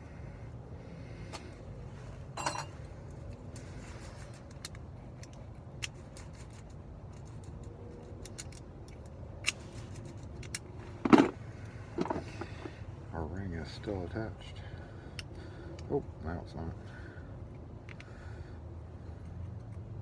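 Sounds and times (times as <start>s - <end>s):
lock parts rattling: 2.4s - 11.4s.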